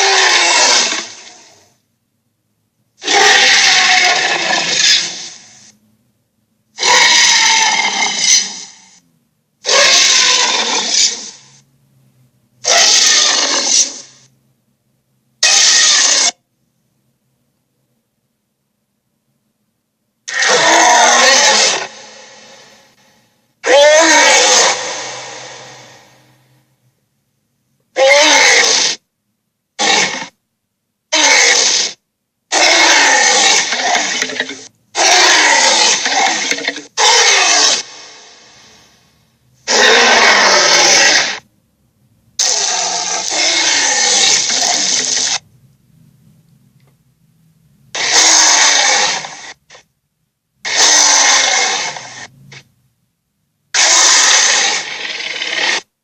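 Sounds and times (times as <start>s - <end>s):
toy dragon roar effect: 0.0s - 1.7s, 3.0s - 5.7s, 6.8s - 9.0s, 9.6s - 11.6s, 12.6s - 14.3s, 15.4s - 16.4s, 20.3s - 26.4s, 27.9s - 29.0s, 29.8s - 30.4s, 31.1s - 38.9s, 39.6s - 41.5s, 42.4s - 45.4s, 47.9s - 49.8s, 50.6s - 52.3s, 53.7s - 55.9s
creature snorts and growls: 42.4s - 45.4s.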